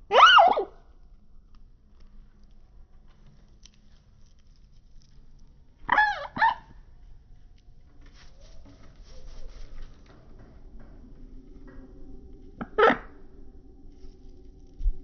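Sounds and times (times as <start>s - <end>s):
scratchy rustling: 7.9s - 10.6s
loud animal calls: 12.6s - 13.2s.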